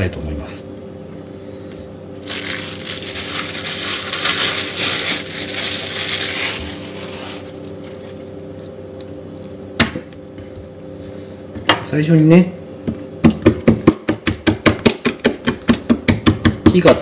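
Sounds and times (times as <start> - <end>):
faint steady hum: 0.0 - 17.0
plastic packaging crinkling: 2.2 - 8.7.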